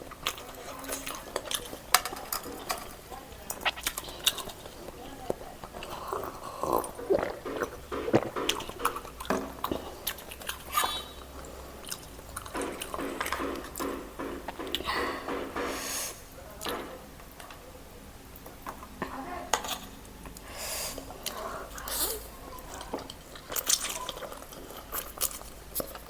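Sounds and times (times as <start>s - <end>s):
chewing and mouth smacks: 0.0s - 15.7s, 21.2s - 26.0s.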